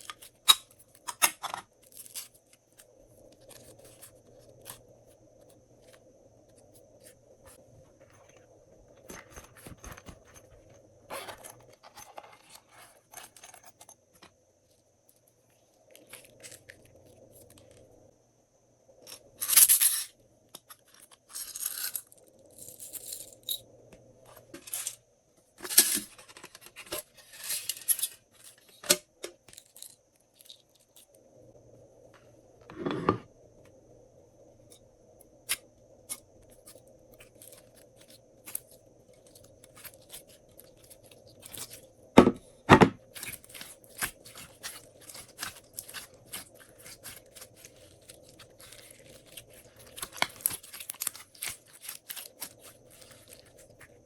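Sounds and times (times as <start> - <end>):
slime clicking and squelching: 43.2 - 53.6.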